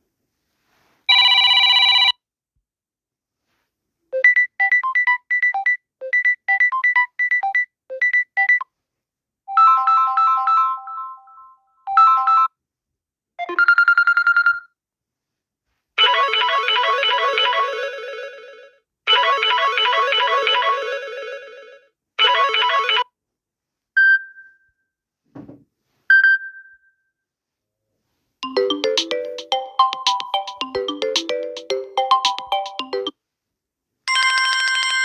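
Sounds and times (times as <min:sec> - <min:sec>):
phone ringtone melodies: 0:09.5 - 0:12.5, 0:16.0 - 0:23.0, 0:28.4 - 0:33.2.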